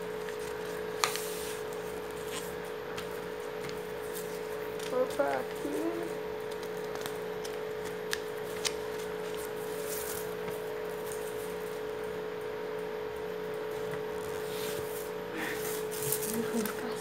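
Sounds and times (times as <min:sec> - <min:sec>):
steady hum: 0:00.0 - 0:17.0
paper folding and rustling: 0:00.2 - 0:11.8, 0:15.6 - 0:17.0.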